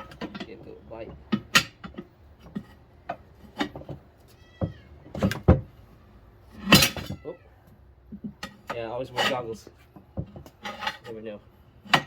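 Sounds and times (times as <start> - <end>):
metal clicks and knocks: 0.0 - 4.1.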